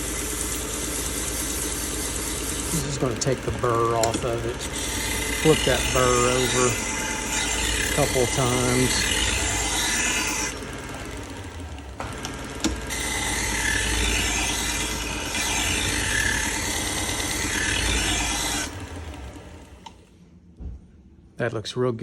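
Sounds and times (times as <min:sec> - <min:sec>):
belt grinder running: 0:00.0 - 0:20.1.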